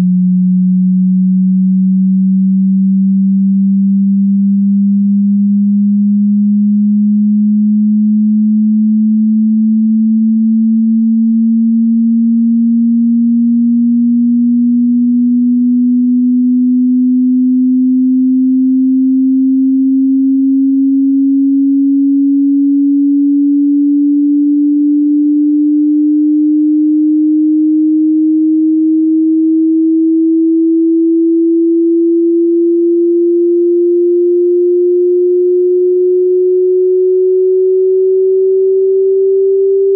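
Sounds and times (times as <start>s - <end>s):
rising sine tone sweep: 0.0s - 39.9s.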